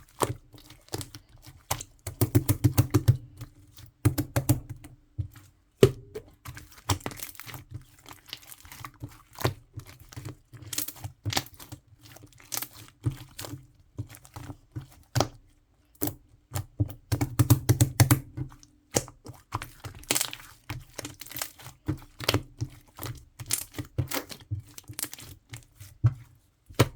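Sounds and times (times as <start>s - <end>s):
slime clicking and popping: 2.0s - 3.2s.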